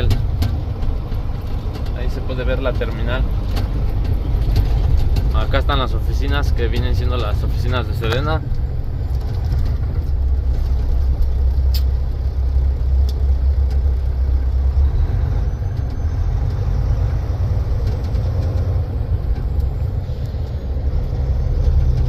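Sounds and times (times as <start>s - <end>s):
light rattles: 0.0s - 14.8s
diesel truck engine rumble: 0.0s - 22.0s.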